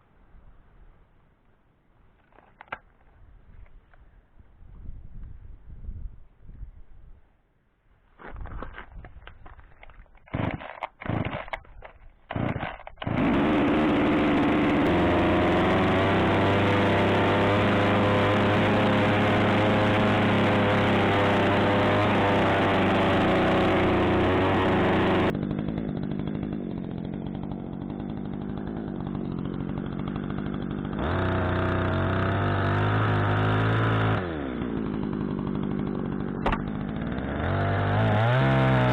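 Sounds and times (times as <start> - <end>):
chainsaw running: 9.4 - 38.9.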